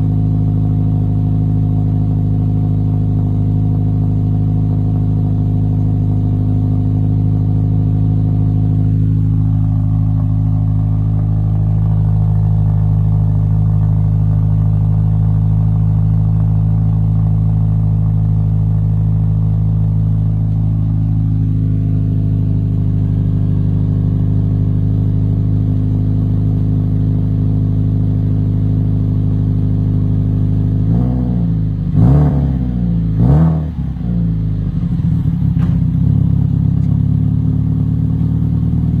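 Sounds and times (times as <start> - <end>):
car engine idling: 0.0 - 39.0
engine revving: 30.8 - 37.0.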